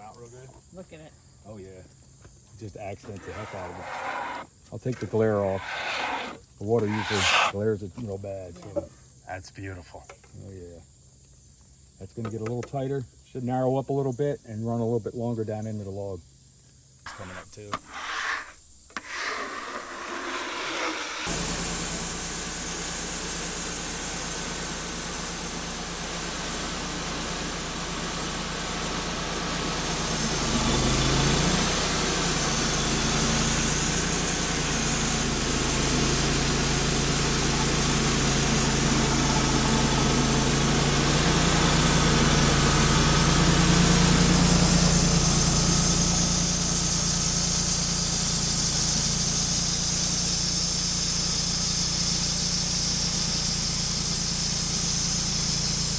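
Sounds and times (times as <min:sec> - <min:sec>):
band saw cutting log: 0:03.0 - 0:07.6, 0:17.1 - 0:55.9
sawmill engine running: 0:05.3 - 0:07.5, 0:19.2 - 0:55.9.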